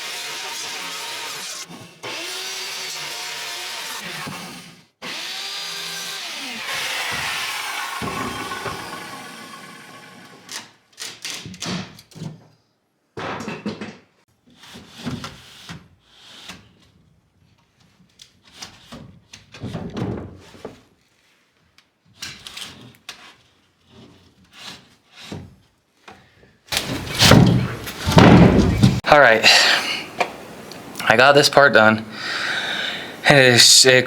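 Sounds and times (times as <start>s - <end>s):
power saw winding down: 0.0s - 3.0s, 3.8s - 10.7s
wooden knocks and thumps: 6.8s - 10.5s, 26.7s - 29.1s.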